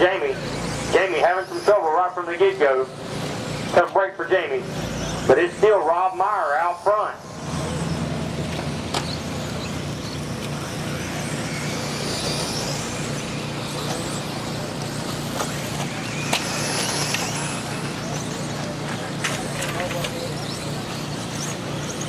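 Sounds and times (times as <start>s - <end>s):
toy car motors whining: 0.0s - 22.0s
sharp clicks of cars landing: 13.6s - 20.2s.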